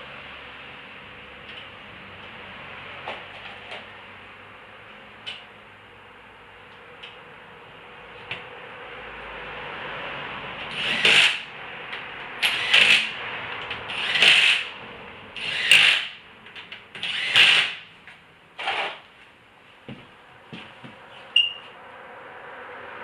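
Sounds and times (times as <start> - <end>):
power tool spinning lug nuts: 10.7 - 11.5, 12.4 - 13.2, 13.9 - 14.7, 15.4 - 16.2, 16.9 - 17.8.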